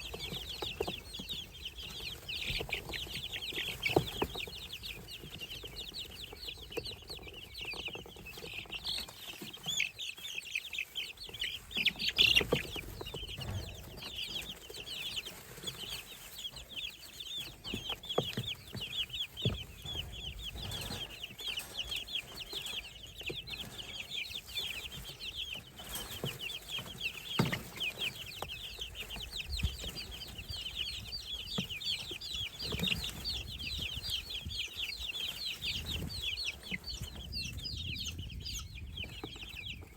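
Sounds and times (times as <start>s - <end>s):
baby birds peeping: 0.0s - 39.9s.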